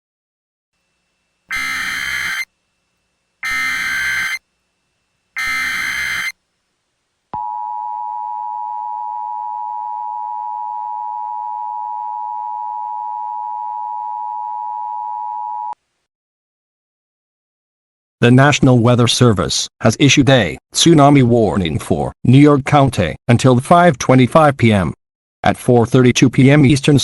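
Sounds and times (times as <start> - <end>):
harsh two-tone attention signal: 1.5 - 2.5, 3.4 - 4.4, 5.4 - 6.4
warbling data bursts: 1.5 - 2.5, 3.4 - 4.4, 5.4 - 6.4.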